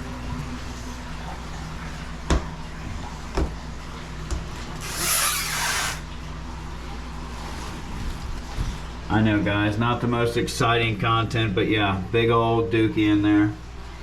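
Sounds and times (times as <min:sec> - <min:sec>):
scraping rustle: 0:04.8 - 0:06.0.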